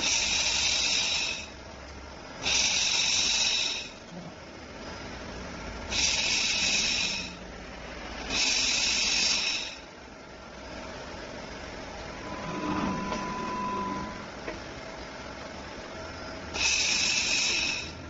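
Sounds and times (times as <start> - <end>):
machine running steadily: 0.0 - 18.0
faint brief tone: 11.9 - 14.6.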